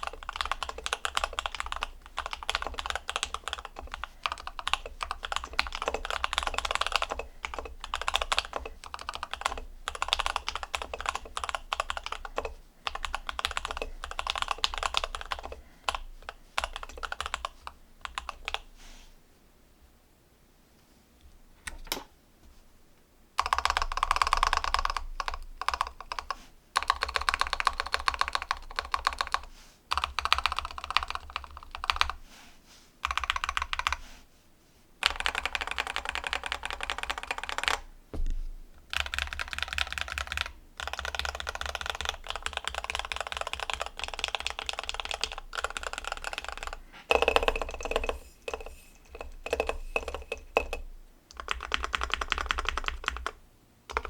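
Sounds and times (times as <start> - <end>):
mechanical keyboard typing: 0.0 - 18.7, 23.4 - 32.2, 33.0 - 34.0, 35.0 - 37.9, 38.8 - 54.0.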